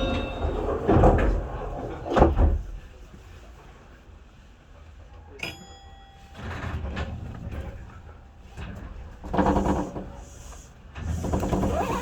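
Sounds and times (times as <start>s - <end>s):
bell-like ding: 0.0s - 1.2s, 5.4s - 6.6s
train rumbling: 0.0s - 5.2s, 6.3s - 12.0s.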